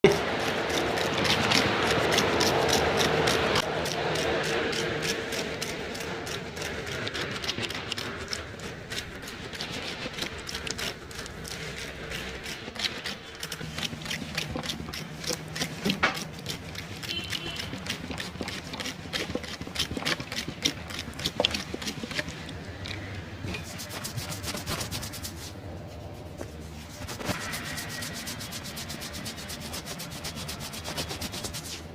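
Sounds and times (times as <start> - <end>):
hands rubbing skin and hair: 23.6 - 31.9.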